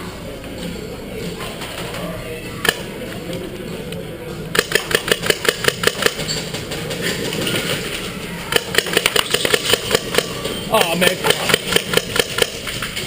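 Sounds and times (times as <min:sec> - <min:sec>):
airsoft gun automatic fire: 0:04.6 - 0:06.4, 0:08.5 - 0:10.4, 0:11.2 - 0:12.8.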